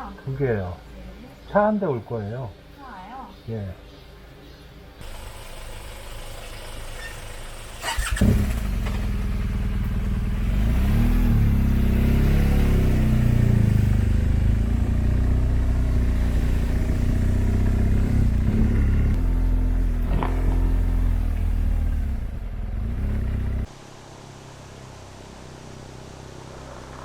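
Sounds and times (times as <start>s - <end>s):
motorcycle starter motor: 5.0s - 10.1s
motorcycle engine idling: 5.0s - 10.6s, 12.5s - 23.7s.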